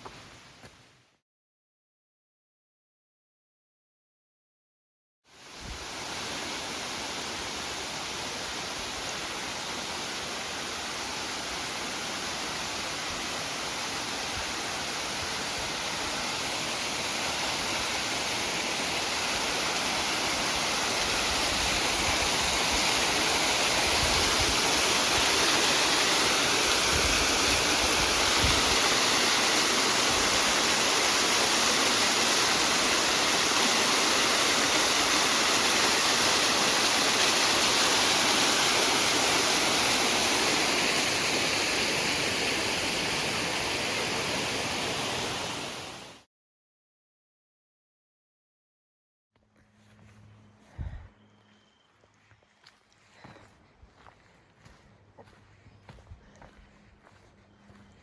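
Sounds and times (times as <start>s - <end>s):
rushing water: 5.4s - 46.2s.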